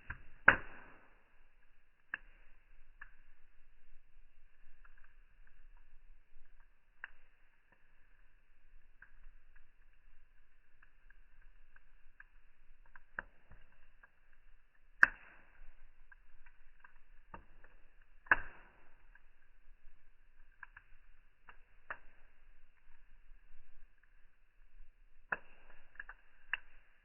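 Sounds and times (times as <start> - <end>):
fire crackling and popping: 0.0 - 27.0.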